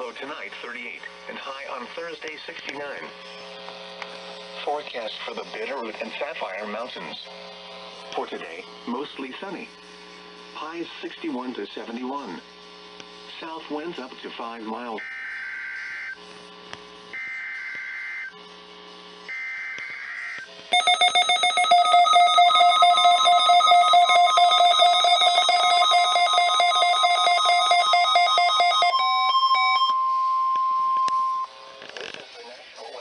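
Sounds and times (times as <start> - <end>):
steady warning alarm tone: 15.0 - 16.2, 17.1 - 18.4, 19.2 - 31.6
warbling data tones: 19.9 - 31.6
fast-pulsing electronic alert: 20.2 - 30.2.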